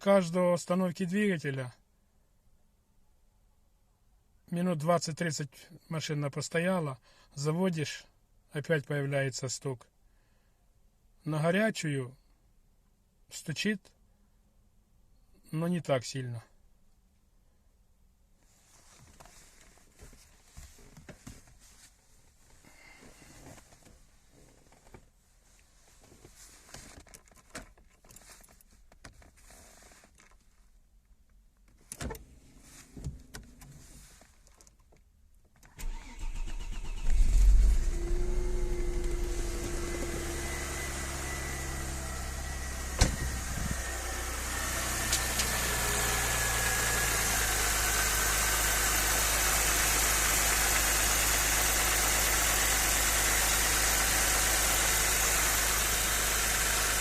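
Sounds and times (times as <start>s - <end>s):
car engine starting and idling: 35.6s - 57.0s.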